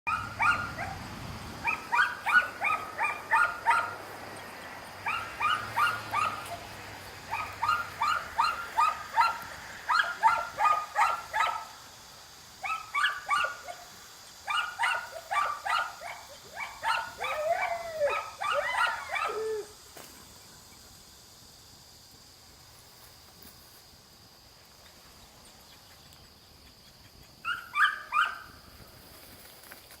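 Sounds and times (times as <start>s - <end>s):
dog barking: 0.1s - 1.0s, 1.6s - 4.0s, 5.0s - 6.6s, 7.3s - 11.7s, 12.6s - 13.9s, 14.5s - 19.6s, 27.4s - 28.5s
dog whining: 16.9s - 19.7s.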